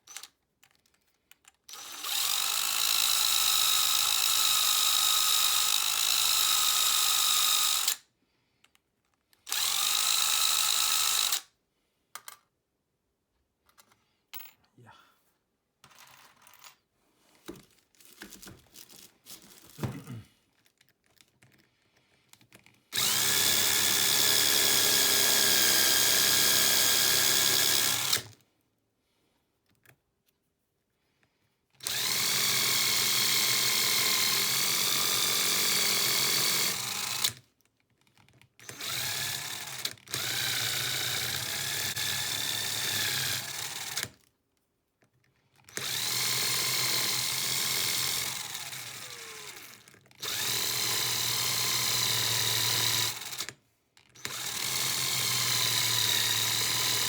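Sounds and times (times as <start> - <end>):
rotary power tool whine: 1.7 - 8.0, 9.5 - 11.4, 23.0 - 28.3, 31.8 - 37.4, 38.6 - 44.1, 45.8 - 53.5, 54.2 - 57.0.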